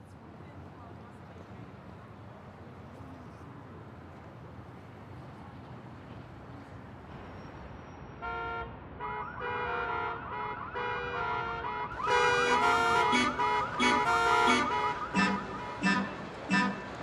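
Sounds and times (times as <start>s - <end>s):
musical car horn warbling: 8.2s - 17.0s.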